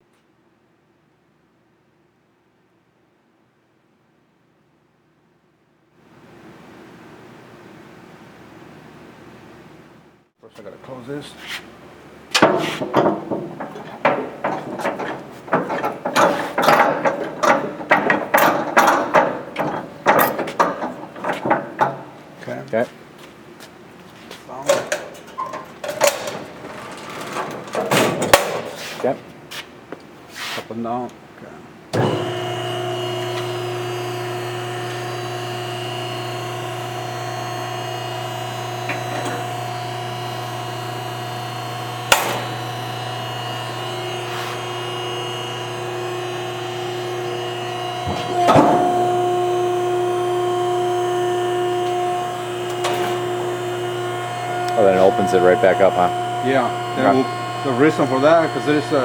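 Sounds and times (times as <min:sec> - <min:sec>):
baler motor and pump humming: 0:11.0 - 0:23.2, 0:31.9 - 0:59.0
metal door clanking and latching: 0:12.3 - 0:22.4, 0:24.5 - 0:29.1, 0:32.0 - 0:32.4, 0:42.1 - 0:42.7, 0:46.4 - 0:50.2, 0:51.8 - 0:59.0.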